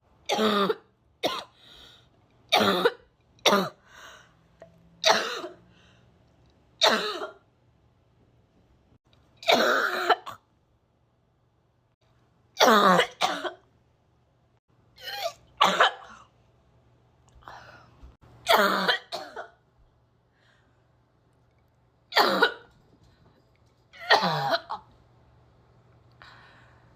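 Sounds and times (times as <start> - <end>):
person coughing and gagging: 0.3 - 1.6, 2.5 - 3.8, 5.0 - 5.6, 6.8 - 7.5, 9.4 - 10.4, 12.6 - 13.6, 15.0 - 16.2, 18.5 - 19.6, 22.1 - 22.7, 24.0 - 24.9.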